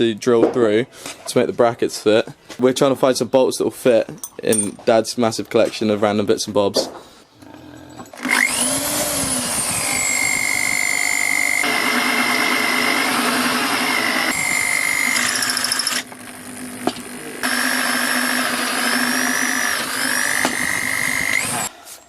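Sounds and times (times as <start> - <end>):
electric drill boring steel: 8.2 - 21.7.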